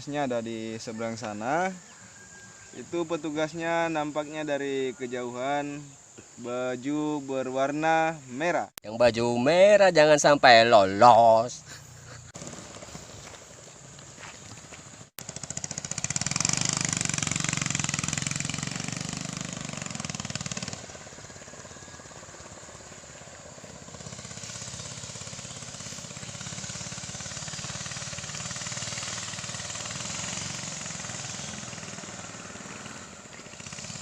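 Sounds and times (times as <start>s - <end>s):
small engine puttering: 11.5s - 34.0s.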